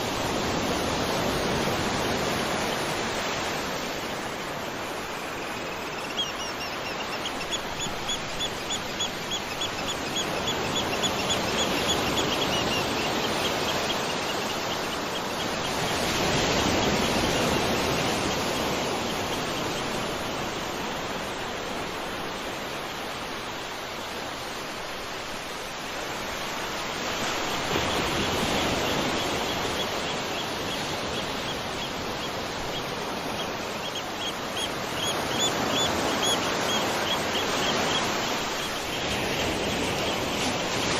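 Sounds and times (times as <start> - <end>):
waterfall rushing water: 31.9 - 40.9.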